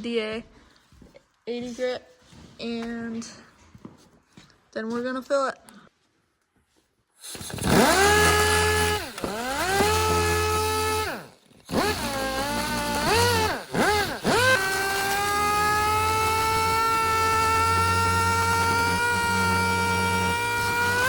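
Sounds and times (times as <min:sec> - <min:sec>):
sander whining: 0:07.2 - 0:21.0.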